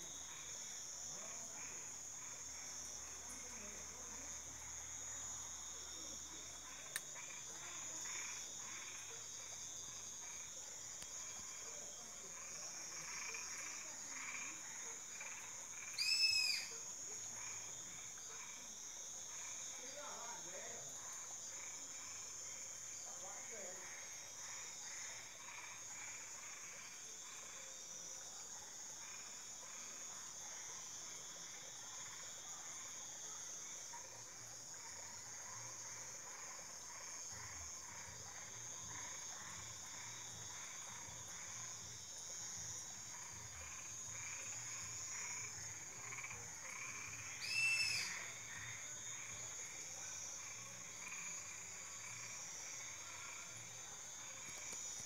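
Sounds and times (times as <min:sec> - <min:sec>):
frogs calling: 0:00.0 - 0:27.8, 0:28.8 - 0:55.0
high insect drone: 0:00.0 - 0:55.0
loud high-pitched call: 0:16.0 - 0:16.7, 0:47.4 - 0:48.2.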